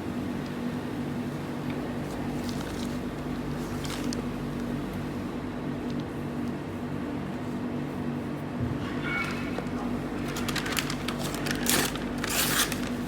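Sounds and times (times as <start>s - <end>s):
low mechanical hum: 0.0s - 13.0s.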